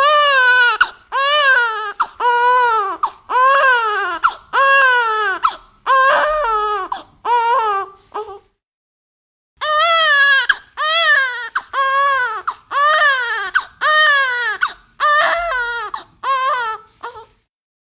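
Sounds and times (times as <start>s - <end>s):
infant crying: 0.0s - 8.5s, 9.6s - 17.4s.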